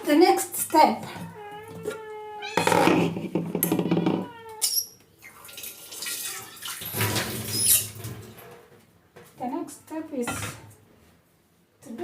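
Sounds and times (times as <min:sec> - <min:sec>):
water splashing in a sink: 0:05.2 - 0:08.4.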